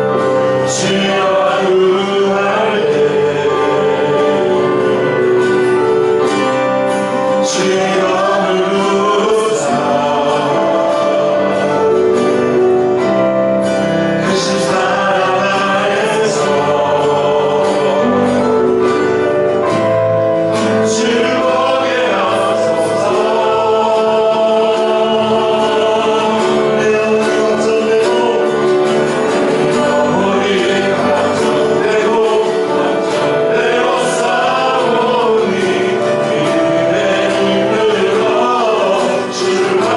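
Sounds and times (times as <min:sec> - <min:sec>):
group singing worship song: 0:00.0 - 0:39.9
instrumental accompaniment: 0:00.0 - 0:39.9.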